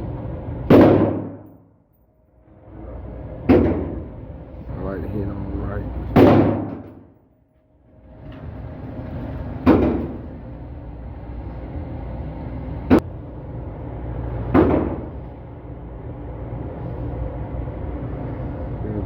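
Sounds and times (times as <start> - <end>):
steady low rumble: 0.0 - 19.0
gunshots echoing: 0.7 - 1.5, 6.2 - 7.0.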